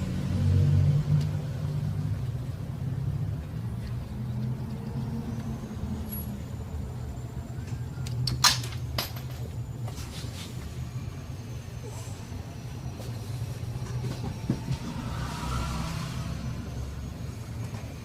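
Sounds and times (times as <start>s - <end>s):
vehicle engine rumbling: 0.0s - 18.0s.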